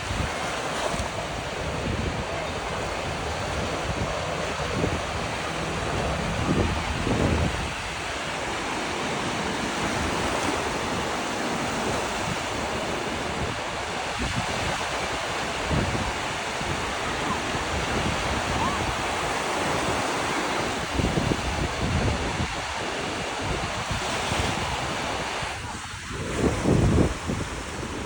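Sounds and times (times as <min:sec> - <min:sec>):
ocean surf on a beach: 0:00.0 - 0:28.0
wind buffeting the microphone: 0:00.0 - 0:28.0.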